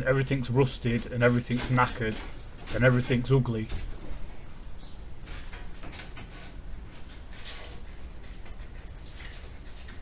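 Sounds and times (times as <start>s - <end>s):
metallic clicks and scrapes of tools: 5.3s - 10.0s.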